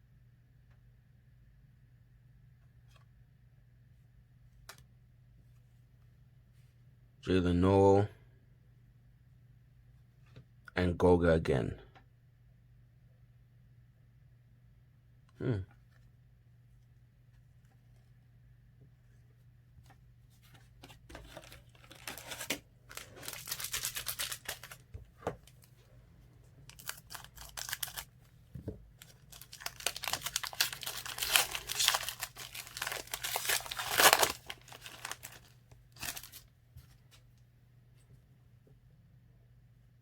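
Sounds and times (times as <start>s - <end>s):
foil wrapper tearing and crinkling: 21.8s - 24.8s, 26.7s - 28.1s, 29.0s - 36.4s.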